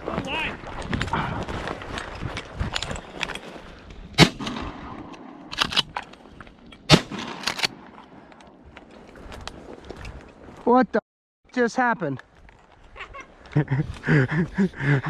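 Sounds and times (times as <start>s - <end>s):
loud shotgun shots: 4.2s - 5.9s, 6.9s - 7.9s.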